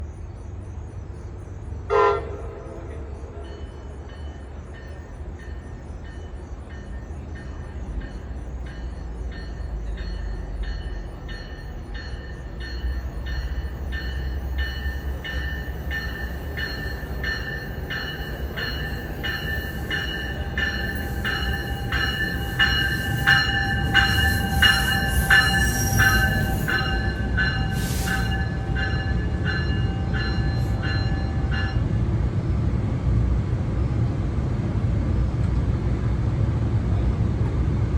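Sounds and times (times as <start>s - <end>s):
low train rumble: 0.0s - 37.9s
train horn blast: 1.9s - 3.4s
repeating high ringing: 10.7s - 31.8s.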